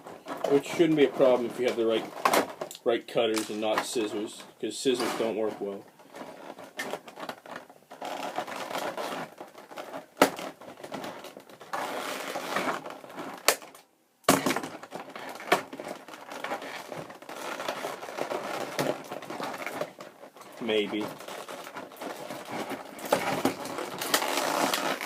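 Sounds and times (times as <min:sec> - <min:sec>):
packaging crinkling: 0:05.2 - 0:25.0.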